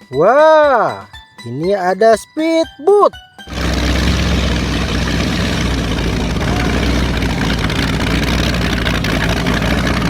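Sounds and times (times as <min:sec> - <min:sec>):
speedboat engine droning: 0:03.4 - 0:10.0.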